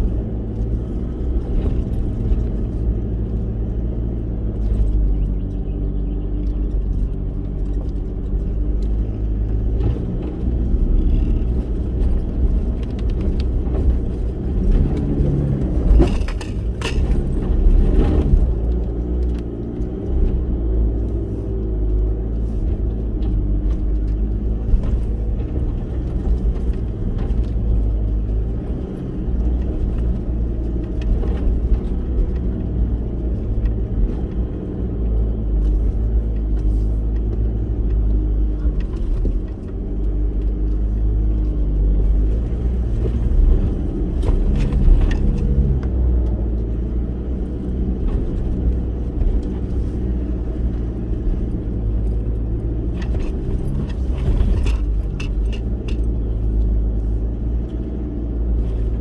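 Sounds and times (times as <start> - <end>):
off-road vehicle engine and road noise: 0.0 - 59.0
sharp knocks and rattles: 9.7 - 18.8.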